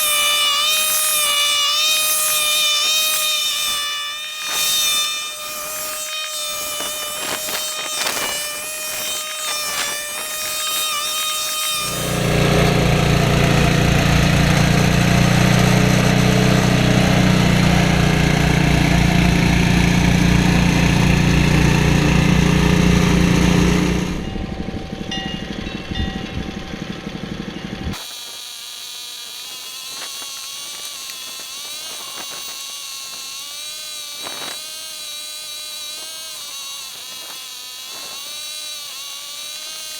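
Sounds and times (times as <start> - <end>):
snowblower engine running: 11.7 - 39.9.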